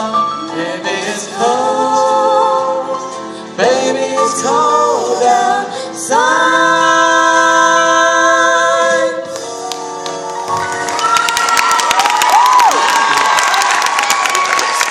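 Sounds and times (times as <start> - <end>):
choir singing a long chord: 0.0 - 9.5
audience cheering and clapping: 10.5 - 14.9.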